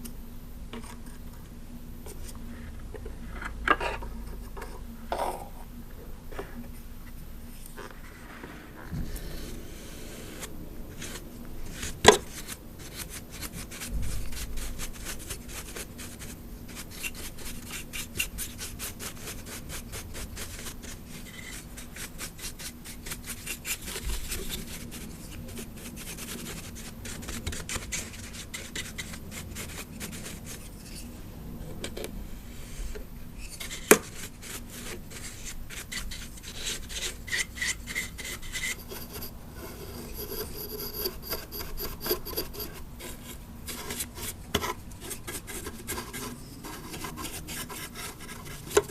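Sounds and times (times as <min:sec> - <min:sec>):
brush bristles scratching plastic: 0:07.6 - 0:31.1, 0:32.7 - 0:48.9.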